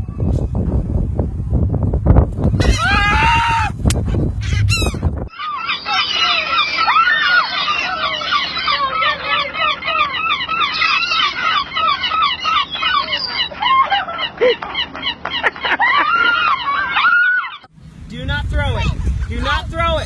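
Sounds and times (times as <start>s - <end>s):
seagulls squawking: 2.6s - 17.7s.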